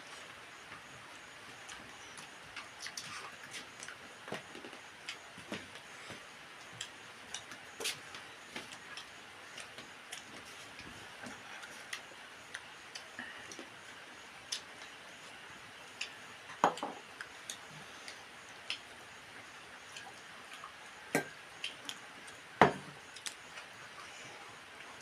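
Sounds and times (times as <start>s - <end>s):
chewing clicks and smacks: 1.7s - 5.2s.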